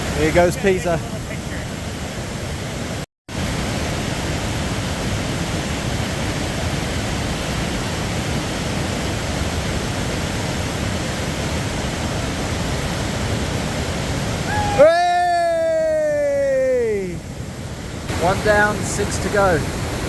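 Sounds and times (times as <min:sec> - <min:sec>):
river rushing: 0:00.0 - 0:20.0.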